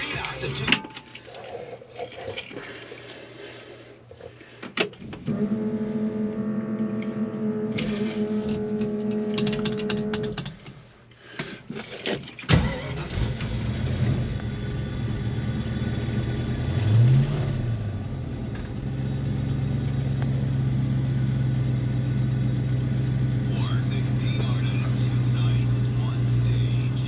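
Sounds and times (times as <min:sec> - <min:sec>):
car engine starting and idling: 0:05.0 - 0:10.5, 0:12.5 - 0:27.0.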